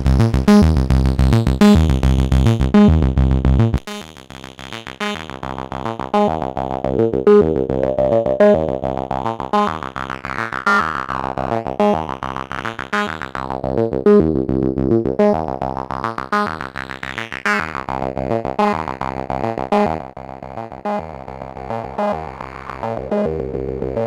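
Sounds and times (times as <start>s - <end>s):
distorted synthesizer sequence: 7.7s - 9.4s.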